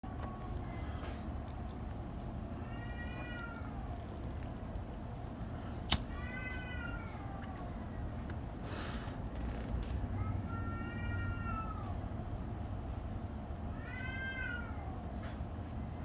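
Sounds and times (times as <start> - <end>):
cat yowling: 2.6 - 4.0, 6.0 - 7.8, 10.2 - 12.0, 13.7 - 15.1
sharp click: 5.9 - 6.1.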